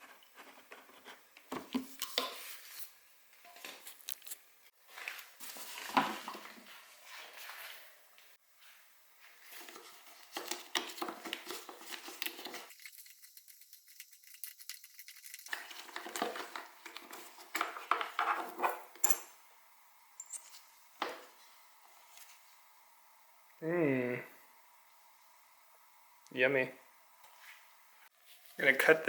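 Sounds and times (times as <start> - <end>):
metal tools clinking and rattling: 20.2 - 20.6.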